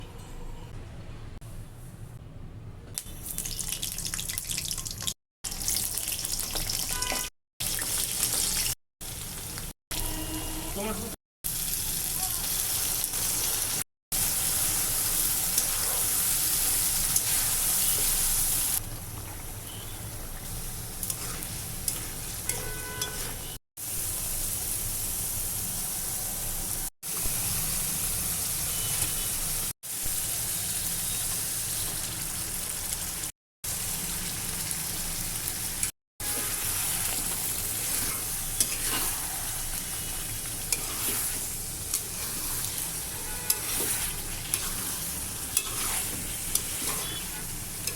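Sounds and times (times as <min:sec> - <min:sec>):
food sizzling in hot oil: 0:03.2 - 0:10.7, 0:11.4 - 0:47.9
spoon scraping pan: 0:36.3 - 0:39.5, 0:40.1 - 0:47.9.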